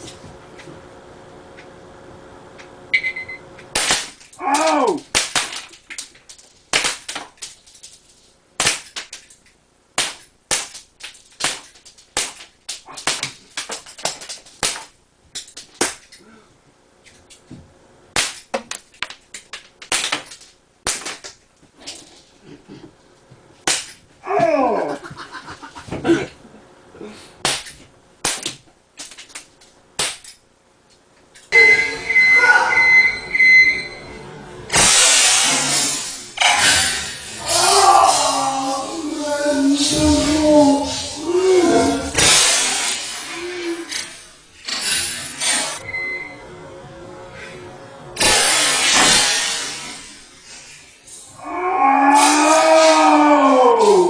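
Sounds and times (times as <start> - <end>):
wavering sliding tone: 31.6 - 34.4.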